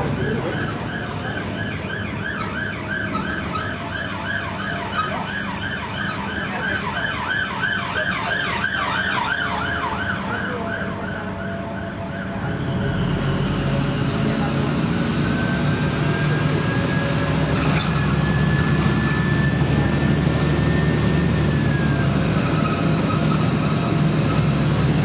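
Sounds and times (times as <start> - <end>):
bus engine running: 0.0 - 7.1, 9.5 - 25.0
bus rhythmic screech: 0.2 - 1.9, 11.2 - 25.0.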